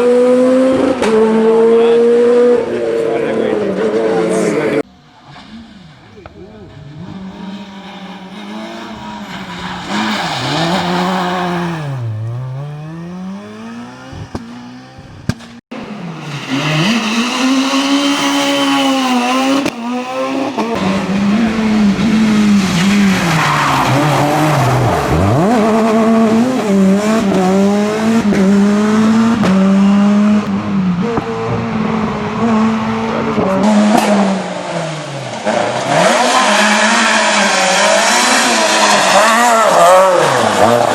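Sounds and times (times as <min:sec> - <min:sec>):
rally cars passing at speed: 0:00.0 - 0:40.9.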